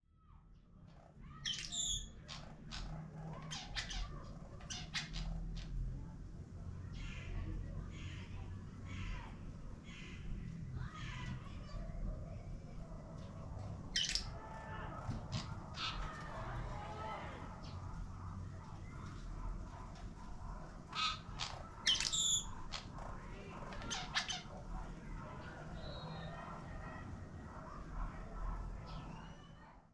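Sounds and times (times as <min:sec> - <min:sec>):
hummingbird squeaky warbling call: 0:01.4 - 0:02.2, 0:21.0 - 0:22.5.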